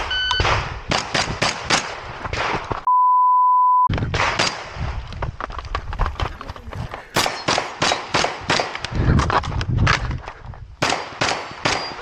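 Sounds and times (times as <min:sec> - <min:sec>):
shot timer beep: 0:00.0 - 0:00.4
censor bleep: 0:00.0 - 0:00.5, 0:02.9 - 0:03.9
rapid gunshots: 0:07.2 - 0:08.8, 0:10.8 - 0:12.0.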